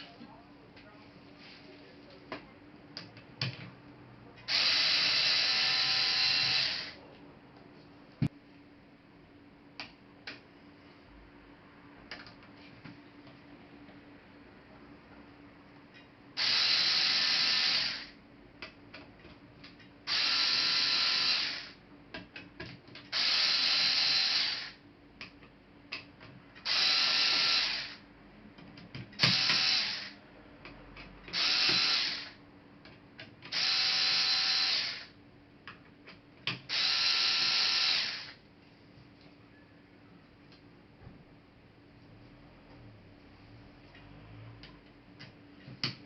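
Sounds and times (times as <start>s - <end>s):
electric screwdriver spinning: 4.5s - 7.0s, 16.4s - 18.1s, 20.1s - 21.7s, 23.1s - 24.8s, 26.6s - 28.0s, 29.2s - 30.2s, 31.4s - 32.4s, 33.5s - 35.1s, 36.7s - 38.4s.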